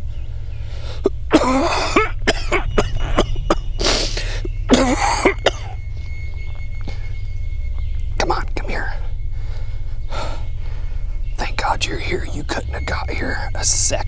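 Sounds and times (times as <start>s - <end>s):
noisy breath in: 0.1s - 1.0s, 9.3s - 11.3s
person coughing: 1.0s - 5.8s.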